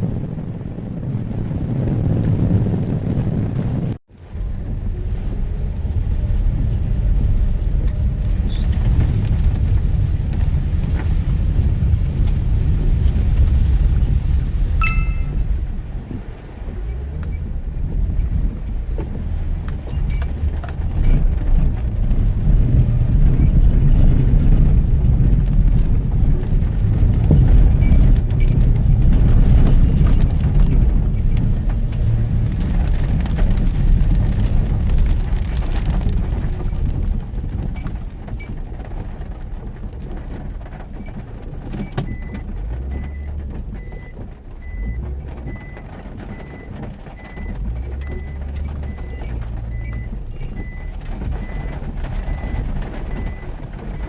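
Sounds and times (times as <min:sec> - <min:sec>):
engine and tyres rumbling: 0:00.0 - 0:54.0
short high beeps: 0:14.8 - 0:15.5
light rattles: 0:17.3 - 0:22.2, 0:27.1 - 0:33.5.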